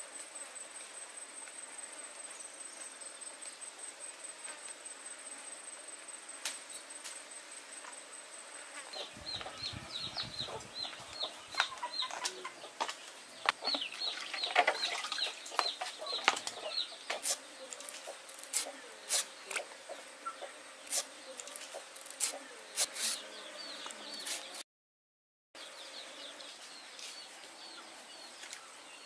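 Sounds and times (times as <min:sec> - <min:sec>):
bird chirping: 0:08.9 - 0:24.6.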